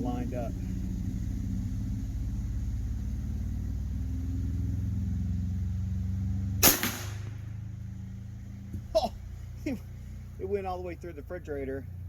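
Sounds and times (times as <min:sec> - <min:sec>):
low engine-like hum: 0:00.0 - 0:12.0
air rifle shot: 0:06.6 - 0:07.5.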